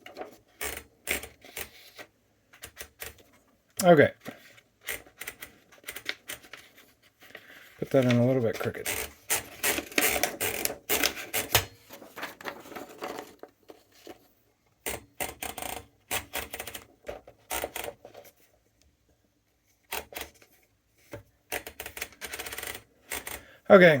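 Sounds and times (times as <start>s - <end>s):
typewriter clattering: 4.9s - 6.7s, 7.8s - 11.7s, 14.9s - 16.9s, 21.5s - 23.5s.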